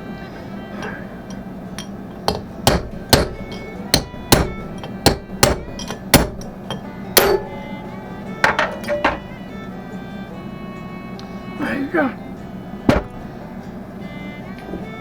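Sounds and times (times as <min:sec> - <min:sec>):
hammer blows on steel: 0:00.0 - 0:09.8, 0:12.8 - 0:13.8.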